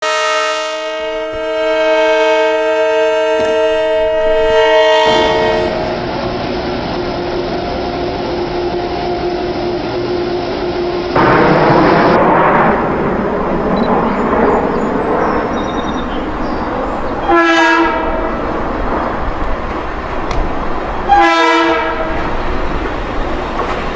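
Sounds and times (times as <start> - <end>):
locomotive air horn chord: 0.0 - 6.1, 17.2 - 18.4, 21.0 - 22.3
train engine: 0.0 - 23.9
train wheels rumbling on rails: 1.0 - 23.9.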